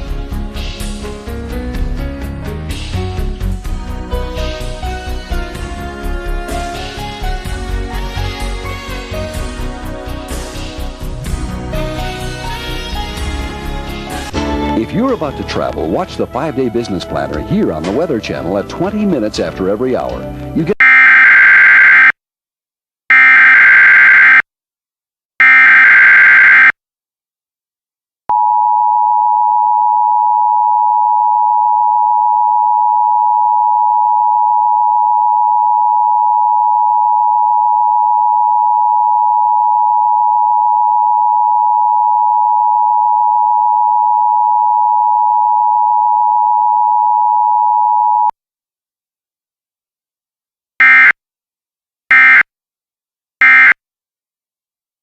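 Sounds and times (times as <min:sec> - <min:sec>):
harsh digital data bursts: 0:23.1 - 0:24.4, 0:25.4 - 0:26.7, 0:52.1 - 0:52.4
two-tone alert signal: 0:25.4 - 0:26.7, 0:50.8 - 0:51.1, 0:52.1 - 0:52.4, 0:53.4 - 0:53.8.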